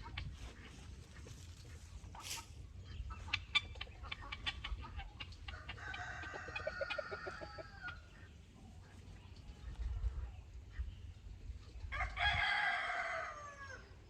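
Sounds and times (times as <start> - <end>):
rooster crowing: 5.7 - 7.9, 11.9 - 13.9.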